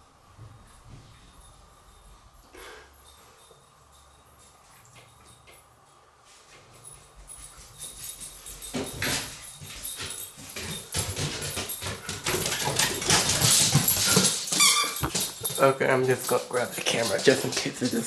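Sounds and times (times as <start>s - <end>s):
dog paws thudding on stairs: 6.6s - 18.0s.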